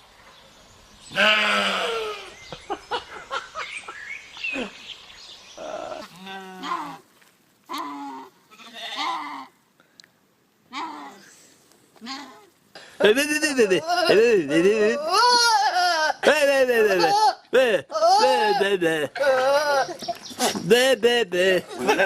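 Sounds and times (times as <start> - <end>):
livestock bleating: 1.1 - 2.3, 7.7 - 9.5.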